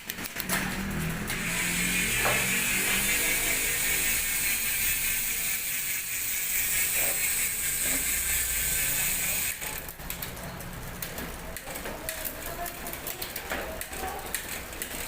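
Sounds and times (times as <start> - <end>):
bicycle freehub ratchet buzzing: 0.1 - 9.8.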